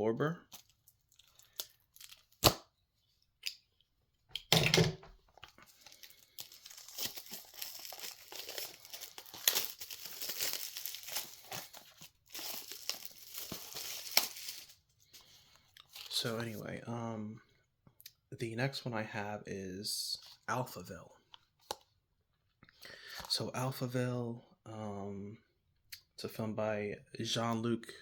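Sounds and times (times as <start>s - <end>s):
shrink wrap tearing and crinkling: 0.5s - 2.6s, 5.3s - 14.8s.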